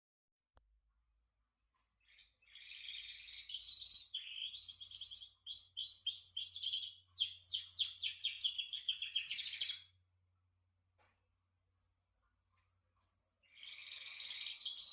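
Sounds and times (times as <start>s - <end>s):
canary singing trills: 1.7s - 9.9s, 13.2s - 14.9s.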